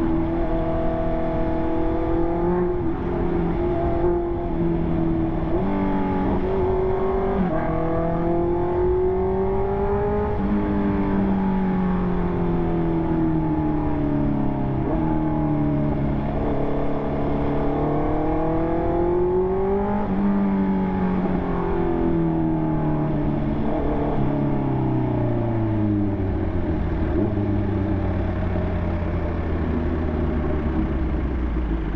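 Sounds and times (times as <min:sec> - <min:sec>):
motorcycle engine revving: 0:00.0 - 0:12.5
wind and road noise: 0:00.0 - 0:31.9.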